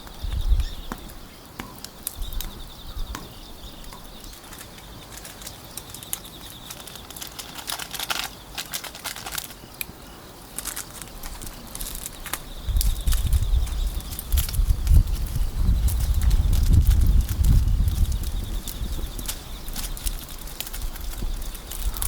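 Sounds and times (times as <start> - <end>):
sharp pops from fire: 0.0 - 22.0
wood fire crackling: 0.0 - 22.0.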